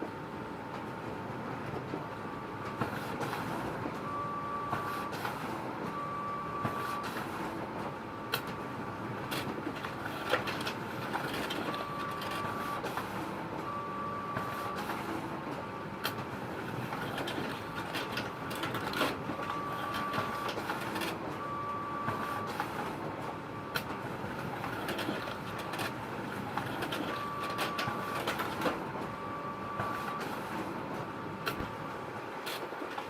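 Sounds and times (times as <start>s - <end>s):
photocopier running: 0.4s - 33.0s.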